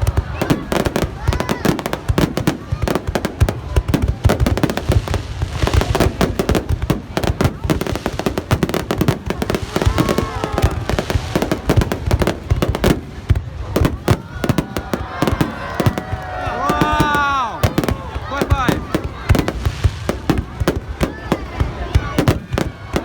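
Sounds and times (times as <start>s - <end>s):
fireworks bangs and crackles: 0.0s - 23.0s.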